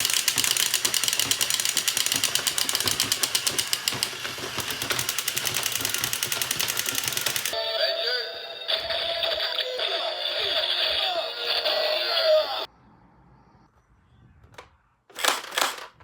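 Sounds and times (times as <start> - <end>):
toy gun mechanism clicking rapidly: 0.0 - 7.6, 15.1 - 16.0.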